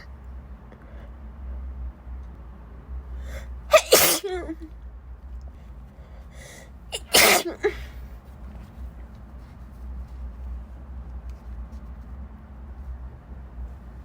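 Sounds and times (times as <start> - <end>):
woman sneezing: 3.7 - 4.7, 7.0 - 7.9.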